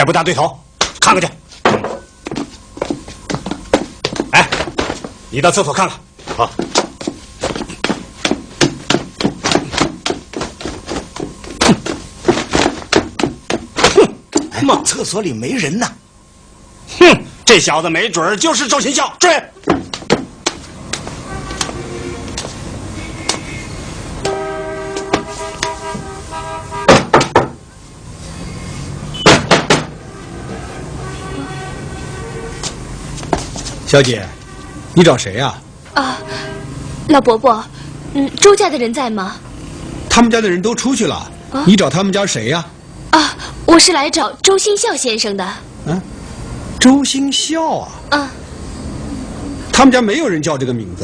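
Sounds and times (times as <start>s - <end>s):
quick footsteps on wooden boards: 1.6s - 5.2s, 6.2s - 14.1s, 19.6s - 22.6s, 33.2s - 33.8s
knocking on wooden door: 26.9s - 27.6s.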